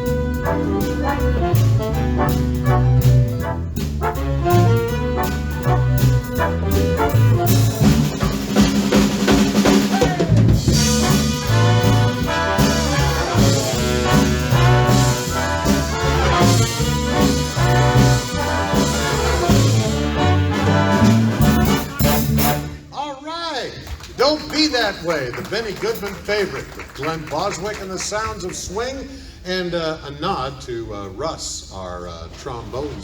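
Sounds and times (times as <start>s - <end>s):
walking bass line: 0.0s - 22.8s
brass section playing: 0.0s - 23.0s
drum kit: 0.0s - 23.0s.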